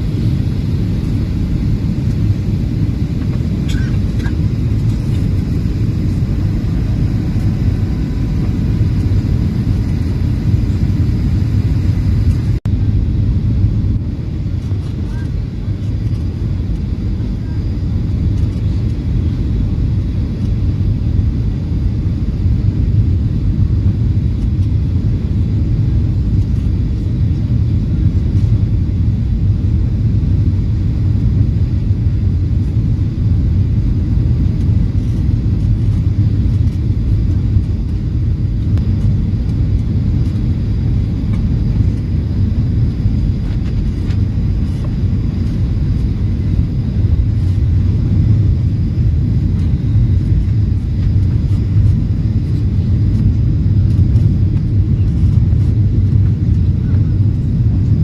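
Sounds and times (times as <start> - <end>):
jet cabin engine rumble: 0.0 - 58.0.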